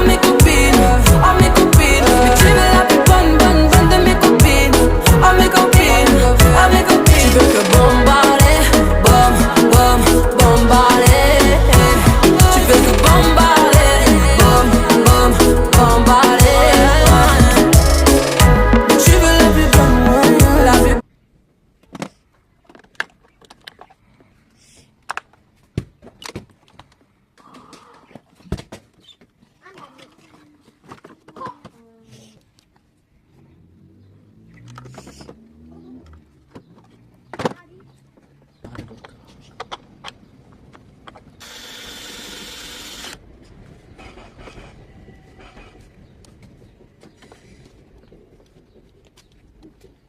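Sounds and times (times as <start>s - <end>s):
steady rasping noise: 0.0s - 20.9s.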